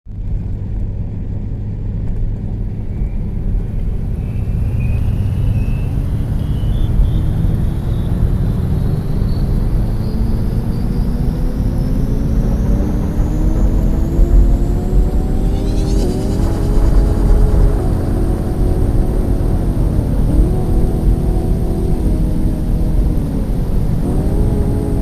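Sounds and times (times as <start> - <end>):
vehicle engine accelerating: 0.2 - 25.0
high whine: 2.1 - 25.0.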